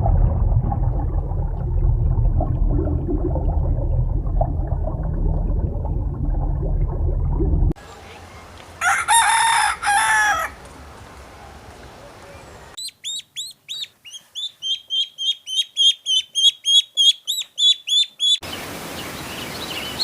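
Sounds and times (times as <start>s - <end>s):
rooster crowing: 8.8s - 10.6s.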